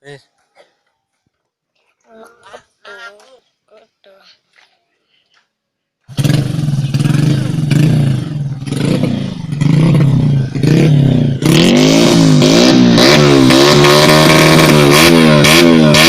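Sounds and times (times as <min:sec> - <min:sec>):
motorcycle engine revving: 0:06.1 - 0:16.0.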